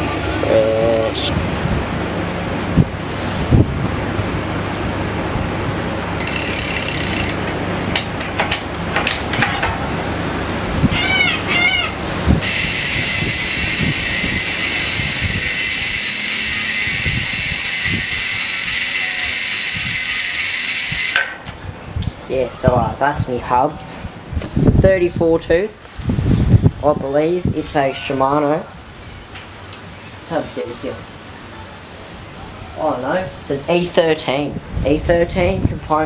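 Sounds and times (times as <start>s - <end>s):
bicycle freehub buzzing: 5.8s - 7.7s, 10.8s - 21.4s
clicks and rattles handling bike: 6.2s - 9.8s, 12.4s - 21.6s.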